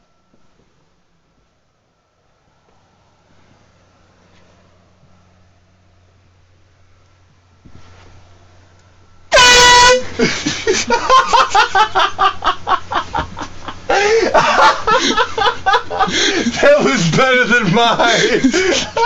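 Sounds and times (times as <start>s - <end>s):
air horn blast: 9.3s - 10.3s
people laughing and yelling: 10.6s - 19.0s.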